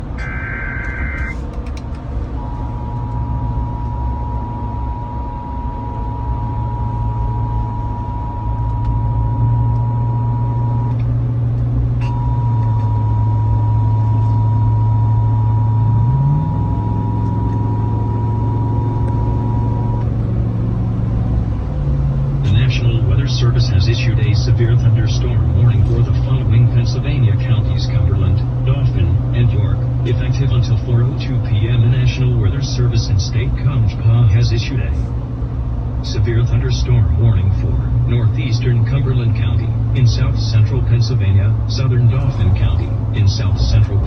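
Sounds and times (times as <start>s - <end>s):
warbling data header: 0.0s - 1.6s, 2.3s - 11.0s
low steady hum: 0.0s - 44.0s
two-tone attention signal: 0.2s - 1.4s, 2.4s - 11.0s, 12.0s - 20.1s.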